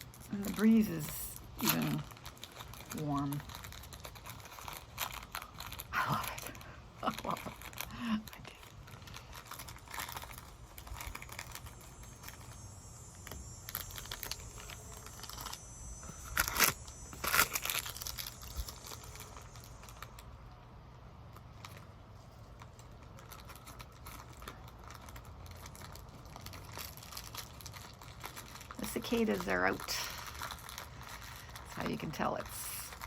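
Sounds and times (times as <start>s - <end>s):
cicadas buzzing: 0.0s - 20.4s, 23.5s - 33.0s
crinkling handling noises: 0.0s - 33.0s.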